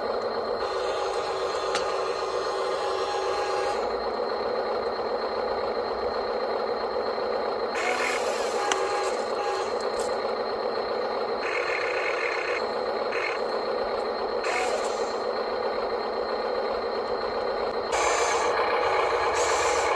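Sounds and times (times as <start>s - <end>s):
electric motor and gearbox whine: 0.0s - 19.9s
high-pitched motor bursts: 0.6s - 3.9s, 7.8s - 10.1s, 11.4s - 13.5s, 14.4s - 15.3s, 17.9s - 19.9s.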